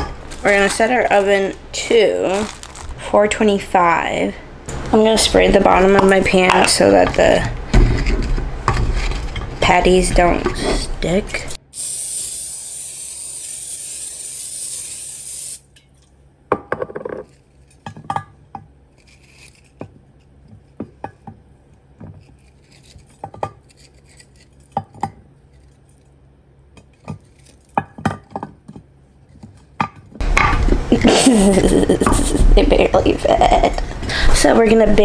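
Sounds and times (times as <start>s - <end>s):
cooking spray hissing: 9.9s - 15.7s, 30.2s - 34.3s.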